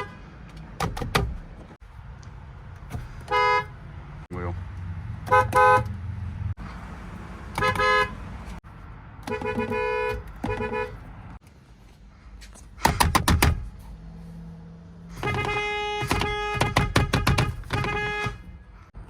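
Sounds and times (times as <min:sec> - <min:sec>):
car horn honking: 0:00.0 - 0:00.3, 0:03.2 - 0:03.8, 0:05.2 - 0:06.0, 0:07.5 - 0:08.3, 0:09.2 - 0:11.0, 0:15.1 - 0:18.8
rapid sharp horn blasts: 0:15.1 - 0:18.6.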